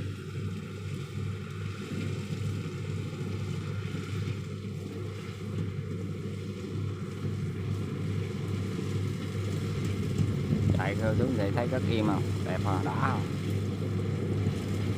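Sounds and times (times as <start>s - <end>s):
diesel engine humming: 9.0s - 14.9s.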